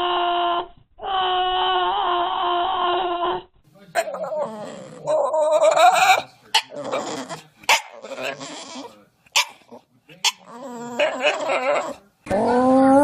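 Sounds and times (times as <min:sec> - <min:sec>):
dog barking: 0:05.5 - 0:12.0.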